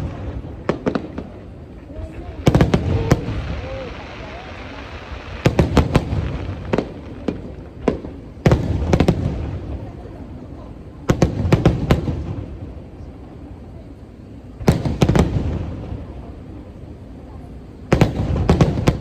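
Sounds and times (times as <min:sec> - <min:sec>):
low rolling rumble: 0:00.0 - 0:08.4
firework shells bursting: 0:00.0 - 0:09.6.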